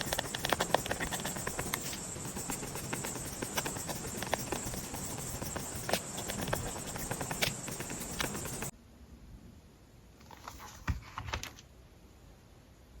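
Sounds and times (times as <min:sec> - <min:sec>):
paper taps and clicks: 0:00.0 - 0:08.7.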